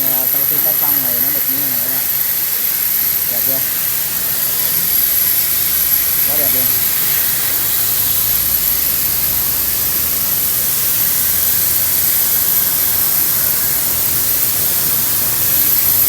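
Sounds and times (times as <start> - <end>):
cutting machine hissing rush: 0.0 - 16.0
thin high whine: 0.0 - 16.0.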